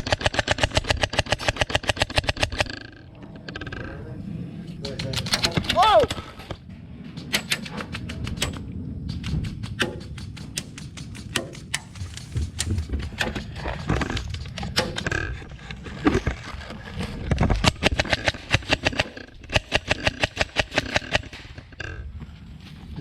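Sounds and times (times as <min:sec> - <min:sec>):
airsoft guns firing: 0:00.0 - 0:02.9, 0:04.8 - 0:15.3, 0:17.6 - 0:21.8.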